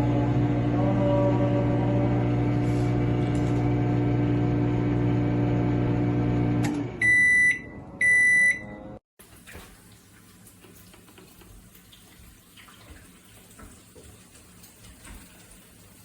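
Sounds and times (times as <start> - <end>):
microwave humming: 0.0 - 9.4
loud high beeps: 7.0 - 8.7.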